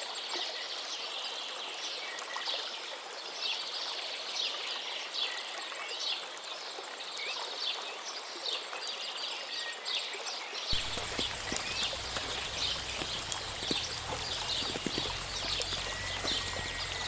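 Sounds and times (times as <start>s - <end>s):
birds chirping: 10.7s - 17.0s
rain hissing: 10.7s - 17.0s.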